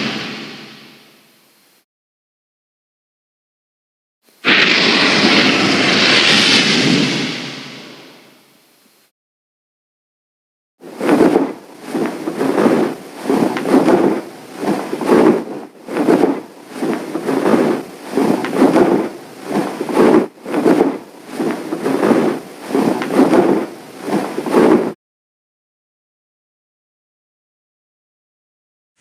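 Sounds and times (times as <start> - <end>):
rough noisy whoosh: 0.0 - 1.3, 4.4 - 8.5.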